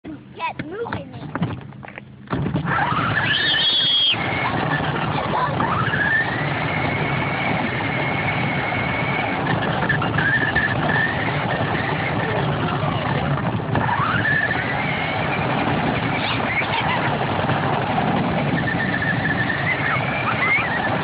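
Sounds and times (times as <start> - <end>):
rc car motor whine: 2.3 - 21.0
steady rushing noise: 2.3 - 21.0.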